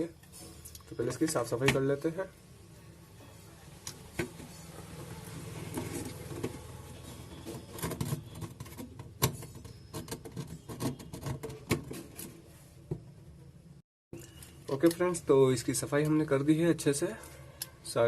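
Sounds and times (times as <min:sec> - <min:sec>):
tool scraping phone frame: 0:04.4 - 0:12.5.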